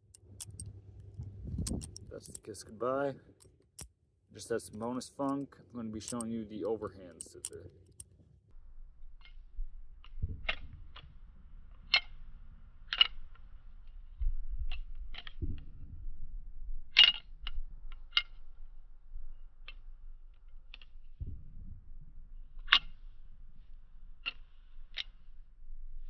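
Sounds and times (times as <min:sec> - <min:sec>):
butterfly knife handles clacking: 0:00.0 - 0:00.7, 0:01.6 - 0:03.6, 0:04.5 - 0:08.1.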